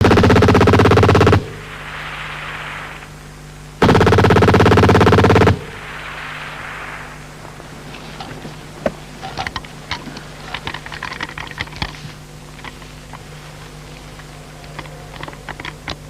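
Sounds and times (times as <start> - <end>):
machine-gun fire: 0.0 - 3.2, 3.8 - 7.4
steady low hum: 0.0 - 16.0
light clicks and rattles: 8.2 - 16.0.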